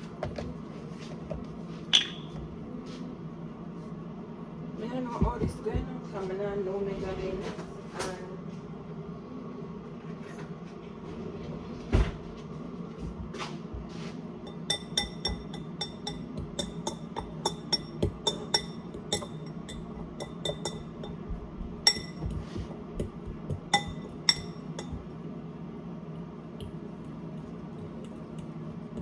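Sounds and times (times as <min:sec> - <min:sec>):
metal utensil clinking bowl: 0:14.5 - 0:21.2.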